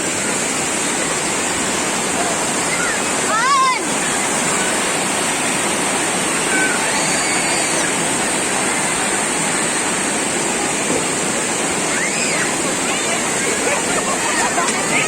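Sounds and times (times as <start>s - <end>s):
waterfall rushing into pool: 0.0s - 15.0s.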